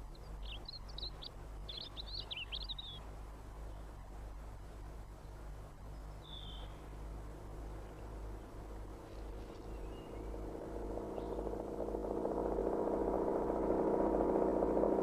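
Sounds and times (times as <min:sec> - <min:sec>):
faint high bird chirps: 0:00.0 - 0:04.1, 0:05.2 - 0:07.0, 0:09.0 - 0:11.6
droning hum of held tones: 0:00.0 - 0:15.0
low rumble: 0:02.6 - 0:15.0.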